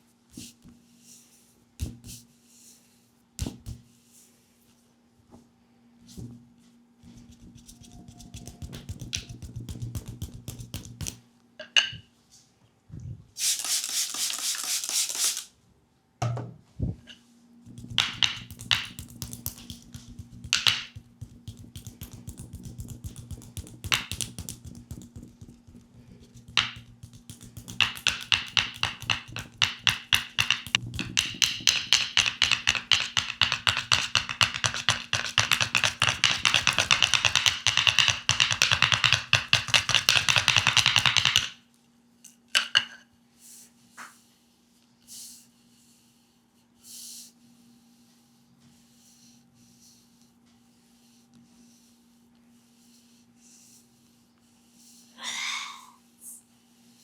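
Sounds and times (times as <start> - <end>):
slaps and taps on a leg: 3.4 - 3.8, 8.3 - 11.2, 17.8 - 41.6
rushing rub: 7.0 - 11.2, 13.4 - 15.5, 17.7 - 37.8
fast even tapping: 7.3 - 11.2, 17.7 - 41.6.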